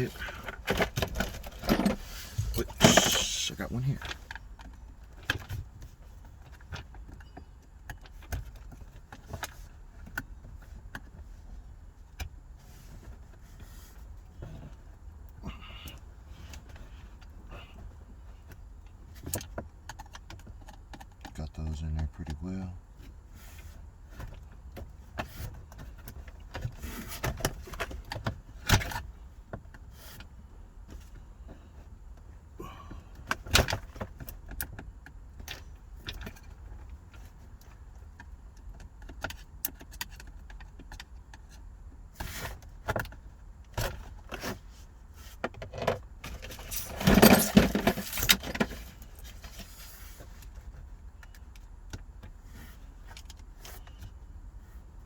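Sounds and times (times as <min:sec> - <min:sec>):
rattling clatter: 0:46.3 - 0:48.5.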